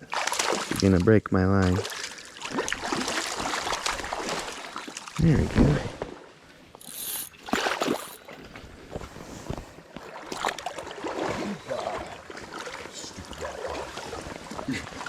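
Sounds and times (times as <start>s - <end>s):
running stream water: 1.5s - 15.0s
fish splashing in water: 6.8s - 8.4s.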